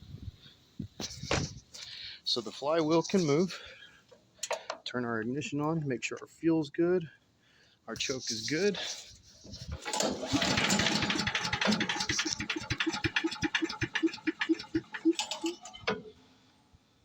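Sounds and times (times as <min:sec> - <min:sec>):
small engine cranking: 0:09.7 - 0:15.9
engine chuffing: 0:09.8 - 0:15.7.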